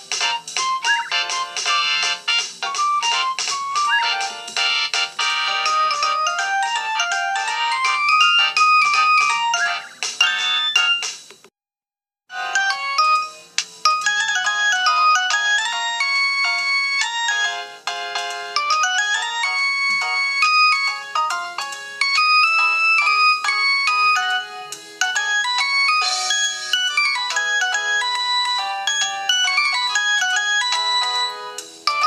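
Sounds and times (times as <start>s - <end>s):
polyphonic phone ringtones: 0.2s - 11.1s, 18.6s - 32.0s.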